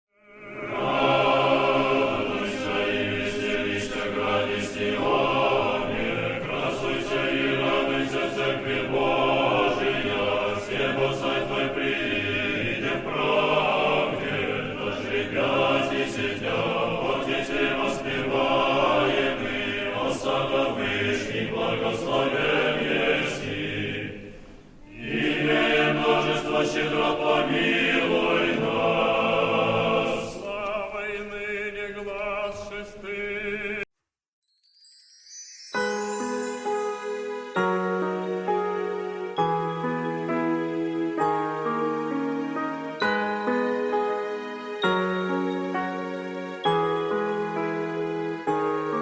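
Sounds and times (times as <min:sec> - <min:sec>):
choir singing a chant: 0:00.2 - 0:33.9.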